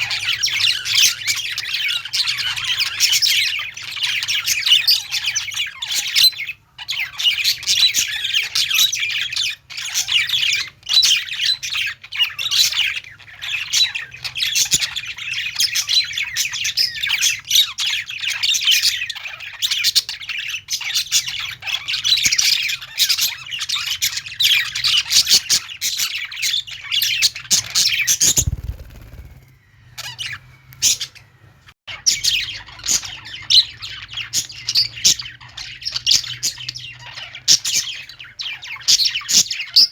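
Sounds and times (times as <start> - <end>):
parrots chirping and squawking: 0.0 - 39.9.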